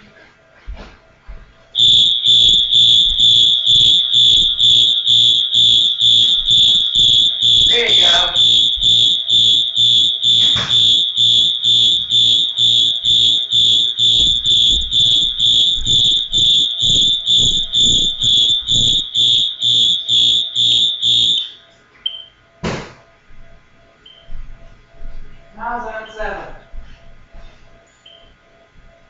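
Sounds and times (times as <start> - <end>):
fire alarm horn pulsing: 1.7 - 22.4.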